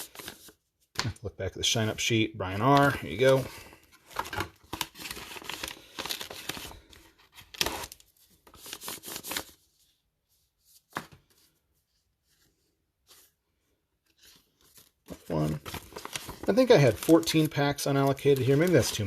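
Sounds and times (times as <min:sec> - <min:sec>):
foil packs rustling and crinkling: 0:02.8 - 0:08.0, 0:14.7 - 0:19.0.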